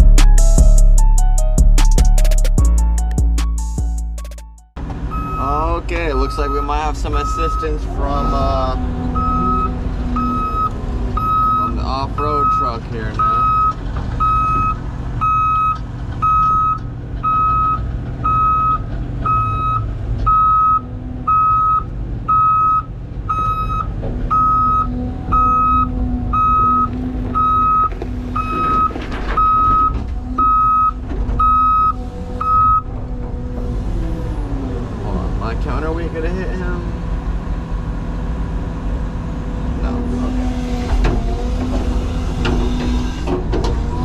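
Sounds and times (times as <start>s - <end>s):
diesel engines running: 4.8s - 44.0s
reversing alarm beeping: 5.1s - 32.9s.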